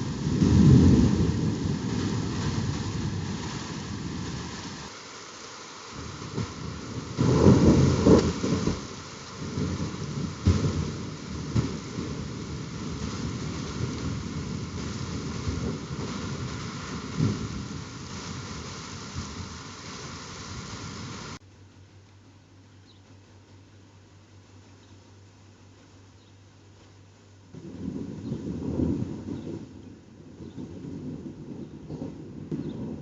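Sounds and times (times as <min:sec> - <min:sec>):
thunder rumbling: 0:00.0 - 0:04.9, 0:05.9 - 0:21.4, 0:27.5 - 0:33.0
heavy rain hiss: 0:00.0 - 0:33.0.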